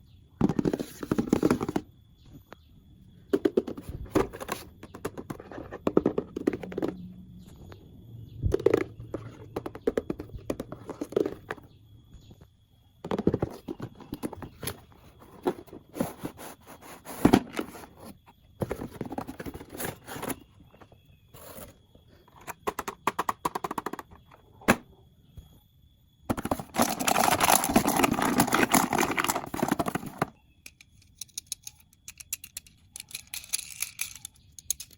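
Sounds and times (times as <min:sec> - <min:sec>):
plastic and cardboard packaging clicks: 0:26.3 - 0:30.9.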